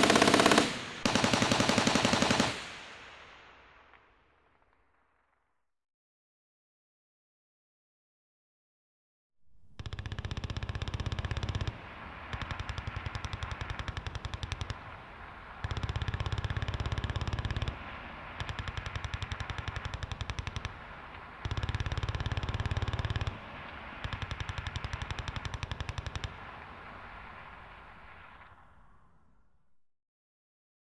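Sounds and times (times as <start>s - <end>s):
machine gun automatic fire: 0.0s - 4.0s, 9.7s - 28.6s
gunfire echo: 0.0s - 5.4s, 9.7s - 29.3s.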